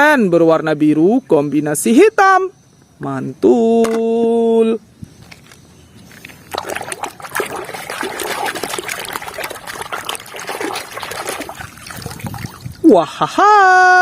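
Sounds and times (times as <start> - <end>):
water trickling and splashing: 6.3 - 13.0.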